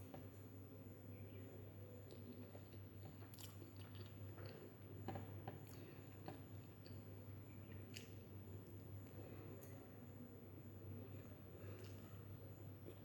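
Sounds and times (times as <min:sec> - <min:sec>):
chewing food: 0:02.0 - 0:08.4, 0:11.6 - 0:12.2.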